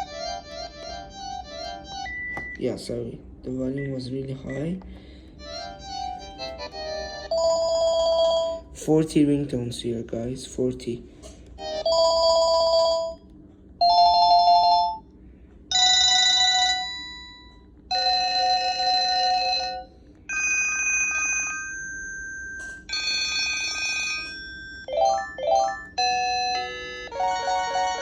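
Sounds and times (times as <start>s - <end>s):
electronic phone ringtones: 5.4s - 8.6s, 11.6s - 13.2s, 13.8s - 15.0s, 15.7s - 28.0s.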